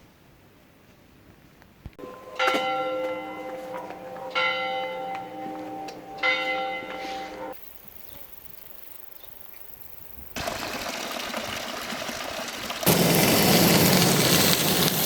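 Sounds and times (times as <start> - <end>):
bell ringing: 2.0 - 7.6.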